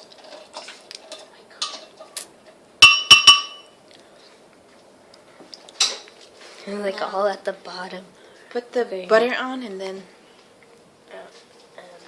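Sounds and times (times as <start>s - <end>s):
utensil clinking in a bowl: 2.8s - 3.8s.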